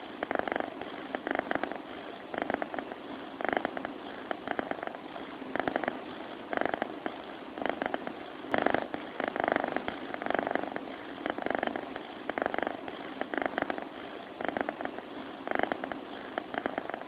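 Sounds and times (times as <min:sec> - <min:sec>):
cat purring: 0:00.0 - 0:17.0.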